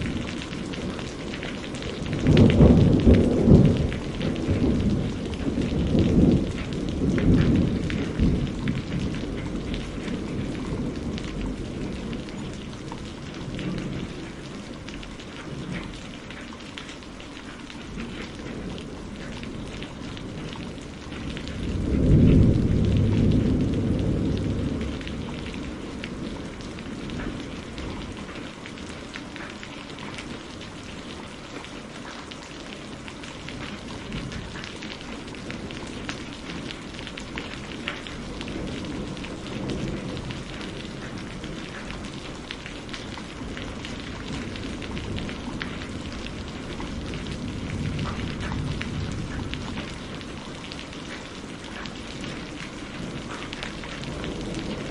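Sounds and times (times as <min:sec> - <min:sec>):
thunder rumbling: 0:00.0 - 0:29.1, 0:32.6 - 0:54.9
heavy rain falling: 0:00.0 - 0:54.9.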